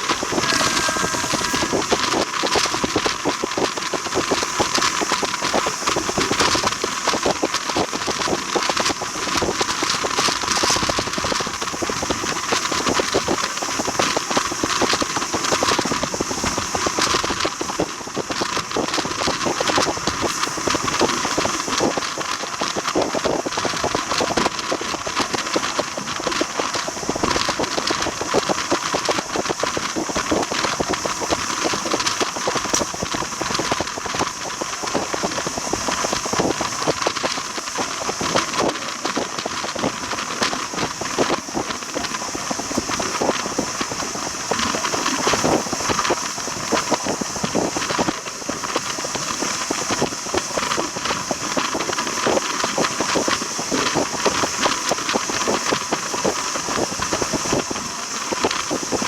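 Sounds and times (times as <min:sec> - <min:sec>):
train wheels rattling and clattering: 0:00.0 - 0:59.0.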